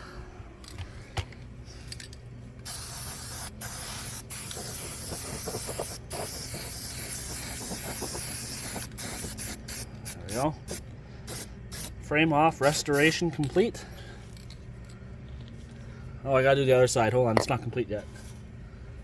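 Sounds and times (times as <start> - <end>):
aerosol can spraying: 2.6 - 11.9.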